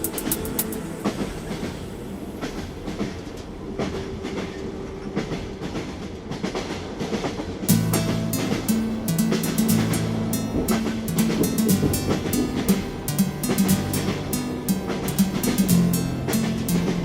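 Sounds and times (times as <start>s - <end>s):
music: 0.0s - 2.3s, 7.7s - 17.0s
train rumbling: 0.0s - 9.1s.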